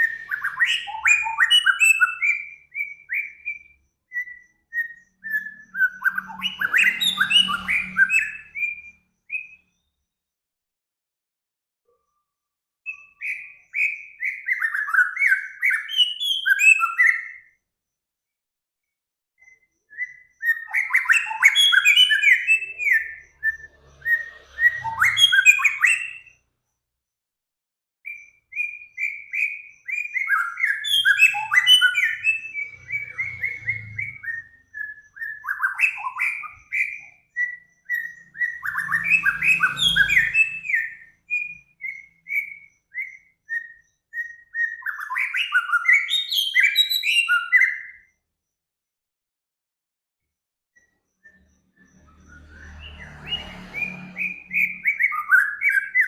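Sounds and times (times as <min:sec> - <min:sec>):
songbird singing: 0:00.0 - 0:10.2, 0:12.0 - 0:17.7, 0:19.4 - 0:26.5, 0:28.1 - 0:48.2, 0:50.8 - 0:56.0.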